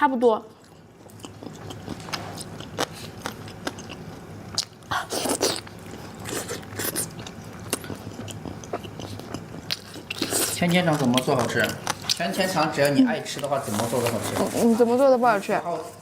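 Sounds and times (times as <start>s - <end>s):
melon crunching while chewed: 0.6s - 12.5s.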